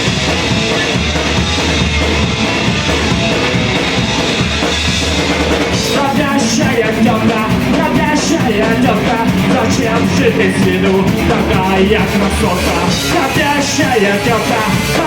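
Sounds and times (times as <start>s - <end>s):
drum kit: 0.0s - 15.0s
electric guitar: 0.0s - 15.0s
punk rock band playing: 0.0s - 15.0s
singer singing chorus: 5.8s - 15.0s.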